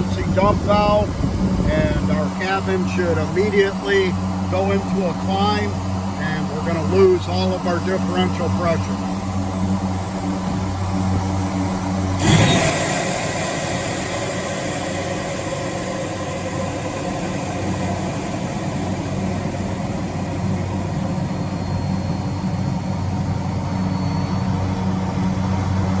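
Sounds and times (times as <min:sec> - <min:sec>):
turboprop engines droning: 0:00.0 - 0:26.0
rush of air from valve: 0:12.1 - 0:22.0.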